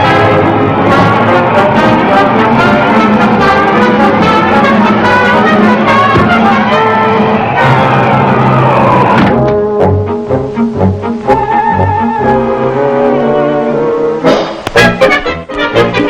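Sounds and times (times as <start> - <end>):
orchestral cartoon music: 0.0 - 16.0
trombone and trumpet: 0.0 - 16.0.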